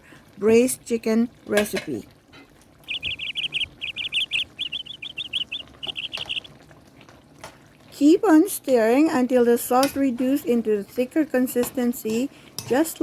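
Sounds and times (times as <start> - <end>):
bird chirping: 2.8 - 6.5.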